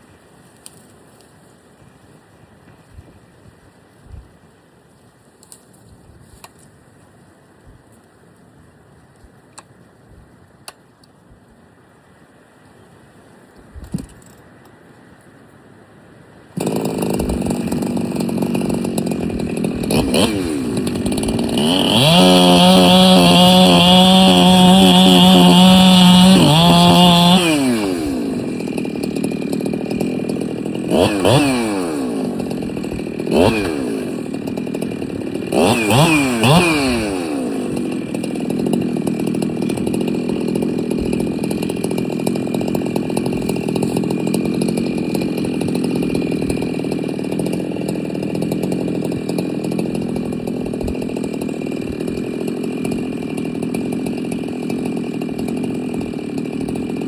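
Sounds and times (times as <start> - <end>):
chainsaw revving and idling: 16.6 - 57.0.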